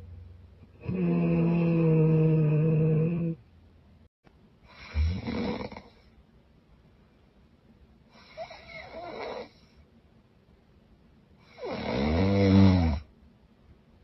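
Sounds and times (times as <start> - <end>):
woman snoring: 0.7 - 3.4, 4.7 - 6.1, 8.1 - 9.7, 11.4 - 13.1.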